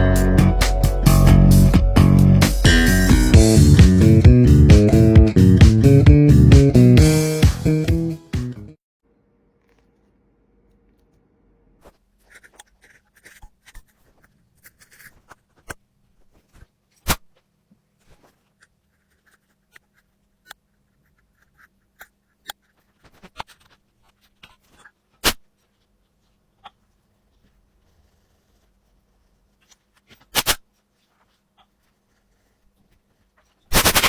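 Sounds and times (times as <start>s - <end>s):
tool scraping on phone: 11.8s - 25.0s.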